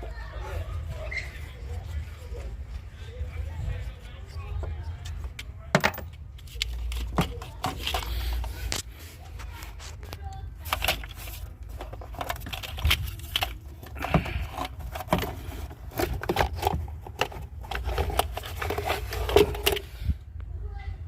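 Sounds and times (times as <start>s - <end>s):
plastic parts rattling: 5.7s - 8.9s, 10.2s - 20.1s
hand tools clicking and knocking: 10.7s - 19.9s.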